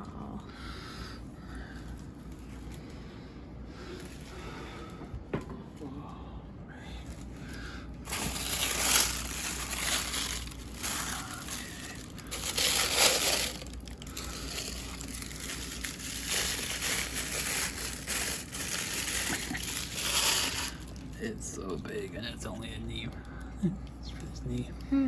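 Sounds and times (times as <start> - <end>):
packing material crinkling: 7.0 - 22.6.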